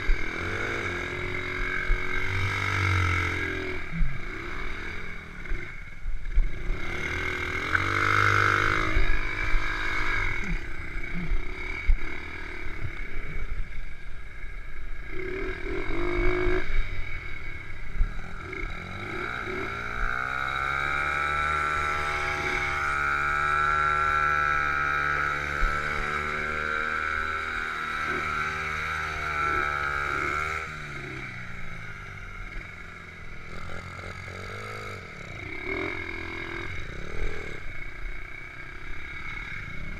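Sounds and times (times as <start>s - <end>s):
small motorcycle engine revving: 0.0s - 39.9s.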